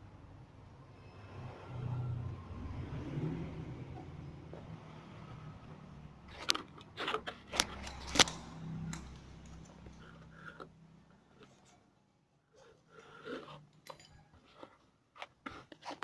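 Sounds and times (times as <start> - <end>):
hard objects clicking and knocking: 6.3 - 10.7.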